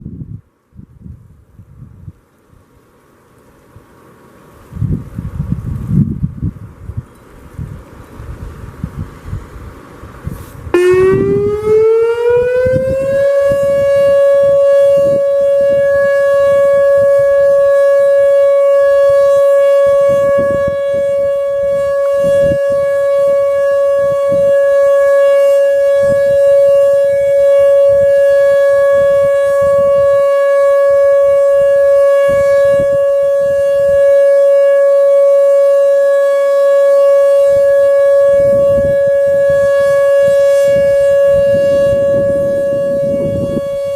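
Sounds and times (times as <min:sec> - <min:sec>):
outdoor warning siren: 0:09.8 - 0:43.9.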